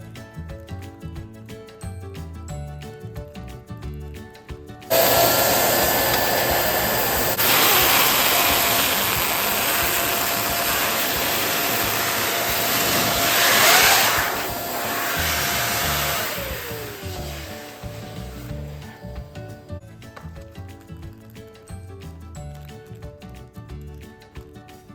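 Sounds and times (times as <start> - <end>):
electric balloon pump whining: 4.9 - 19.6.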